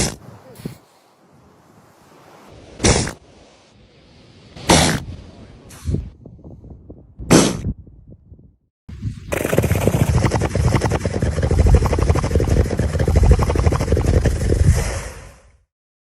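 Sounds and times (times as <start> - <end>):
seal snoring: 9.3 - 14.9.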